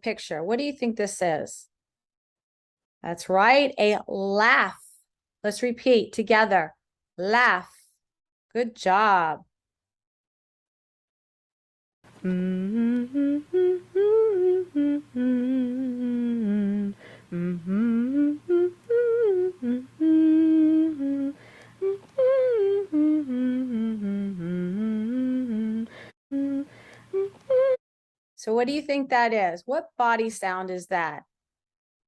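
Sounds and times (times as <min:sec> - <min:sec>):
woman humming a slow tune: 0:12.2 - 0:27.8.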